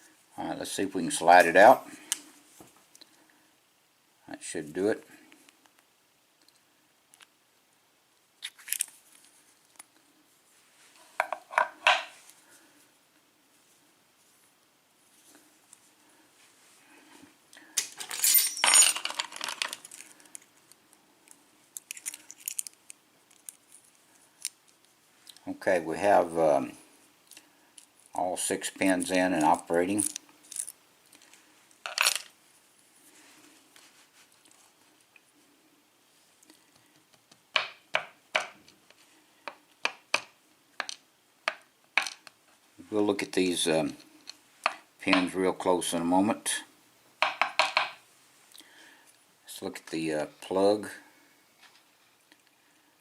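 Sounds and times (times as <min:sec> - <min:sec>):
metal parts clattering and jingling: 0:17.8 - 0:20.1, 0:21.9 - 0:22.8, 0:29.4 - 0:30.8, 0:31.9 - 0:32.3
small metal parts clicking: 0:21.8 - 0:24.8, 0:29.4 - 0:32.3.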